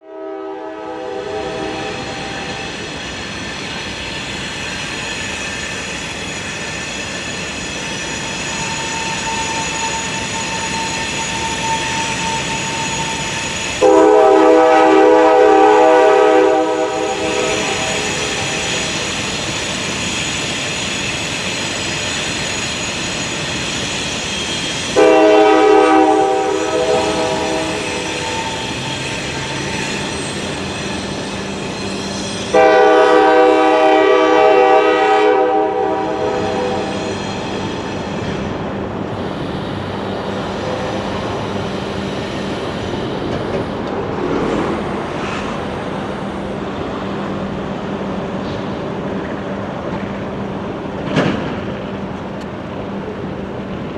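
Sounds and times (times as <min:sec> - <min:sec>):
locomotive horn blasts: 0:00.0 - 0:02.5, 0:13.8 - 0:18.3, 0:25.0 - 0:28.7, 0:32.5 - 0:37.0
freight train rumbling: 0:00.0 - 0:53.9.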